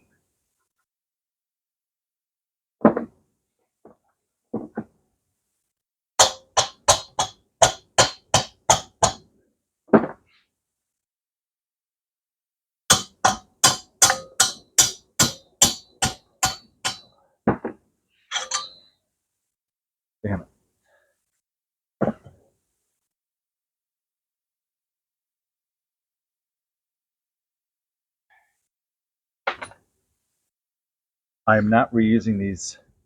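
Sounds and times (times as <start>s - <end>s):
hammer blows on metal engine: 6.2s - 9.2s, 12.9s - 17.1s.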